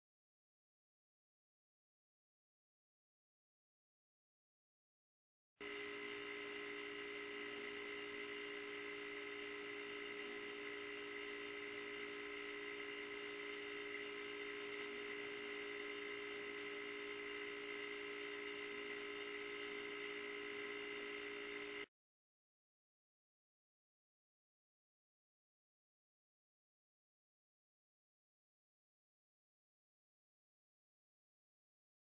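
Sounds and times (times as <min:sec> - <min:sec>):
steady hum with high whine: 0:05.6 - 0:21.9.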